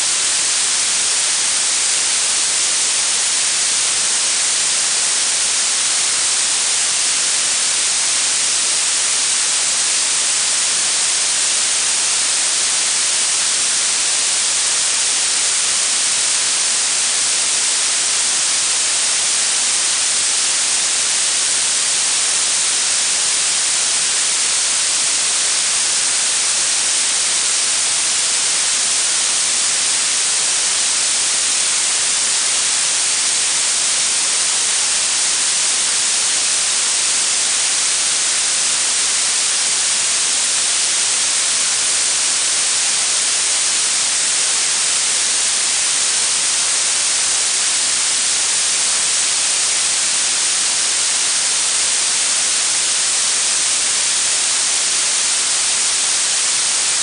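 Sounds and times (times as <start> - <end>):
steady high hiss: 0.0 - 57.0.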